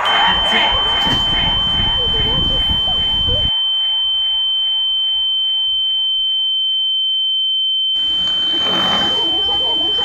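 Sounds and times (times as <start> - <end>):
high-pitched electronic tone: 0.0 - 4.1, 8.0 - 10.0.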